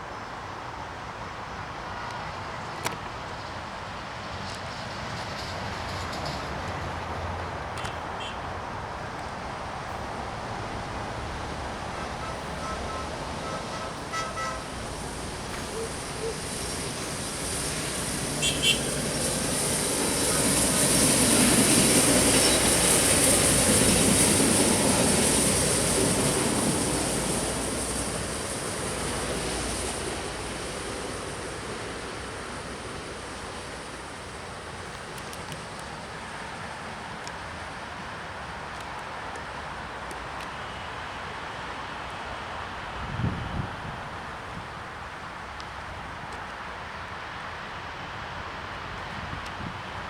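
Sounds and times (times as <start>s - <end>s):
work vehicles passing on track: 0.0s - 50.0s
short horn toots: 12.0s - 14.7s, 18.4s - 18.9s.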